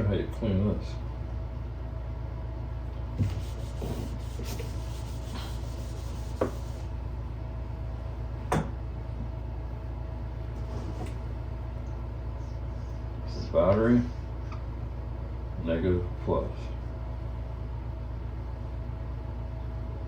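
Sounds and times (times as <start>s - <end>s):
low electrical hum: 0.0s - 20.0s
soft rubbing of drawing surface: 3.2s - 6.9s.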